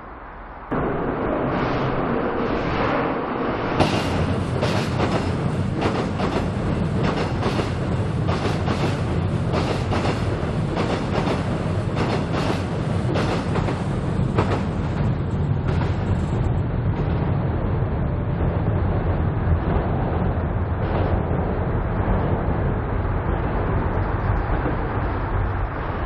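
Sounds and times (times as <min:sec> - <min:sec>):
train rumbling on a bridge: 0:00.0 - 0:26.0
wheels clacking over rail joints: 0:03.8 - 0:16.4.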